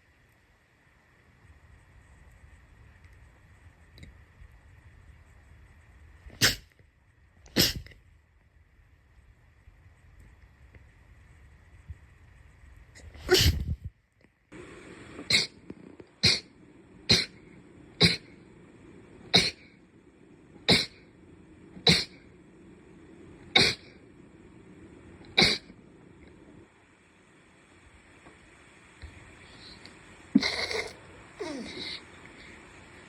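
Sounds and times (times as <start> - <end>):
person sneezing: 6.4 - 6.7, 7.5 - 7.9, 13.2 - 13.8, 15.2 - 15.6, 16.2 - 16.5, 17.1 - 17.4, 18.0 - 18.4, 19.3 - 19.7, 20.6 - 21.0, 21.8 - 22.2, 23.6 - 23.9, 25.4 - 25.7, 30.4 - 32.0.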